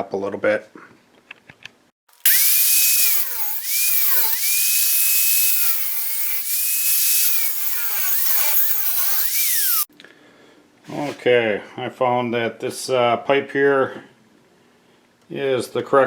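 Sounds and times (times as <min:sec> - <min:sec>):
angle grinder grinding metal: 0:02.1 - 0:09.9.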